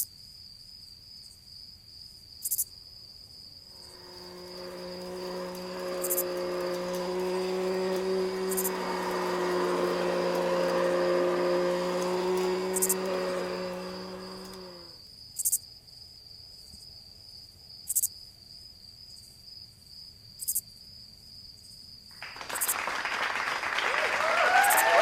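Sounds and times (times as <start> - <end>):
crickets chirping: 3.8 - 14.9
crowd cheering: 3.8 - 14.9, 22.2 - 25.0
low hum: 3.8 - 15.0.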